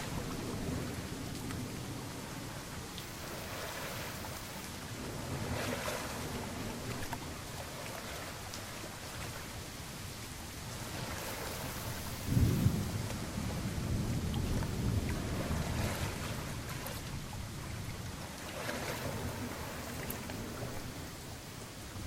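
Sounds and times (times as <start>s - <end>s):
low rumble of thunder: 0.0s - 22.0s
rain falling steadily: 0.0s - 22.0s.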